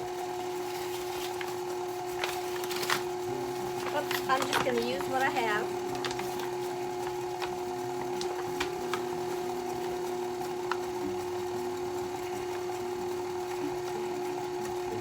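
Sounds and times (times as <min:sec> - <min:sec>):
electric mixer running: 0:00.0 - 0:15.0.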